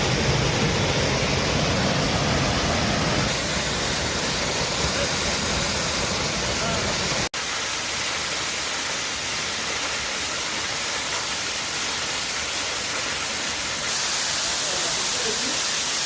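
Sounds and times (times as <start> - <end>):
waterfall pouring: 0.0 - 16.0.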